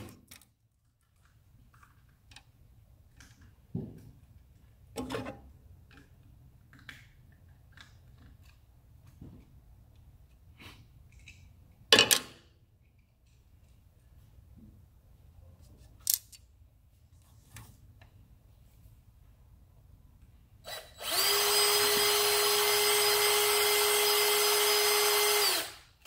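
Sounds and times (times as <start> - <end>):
small objects clicking and knocking: 16.0 - 16.4.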